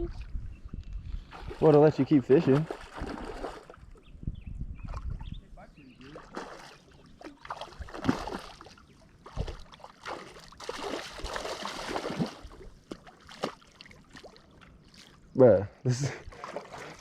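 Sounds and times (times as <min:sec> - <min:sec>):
fish splashing in water: 0:02.4 - 0:03.8, 0:06.2 - 0:15.2.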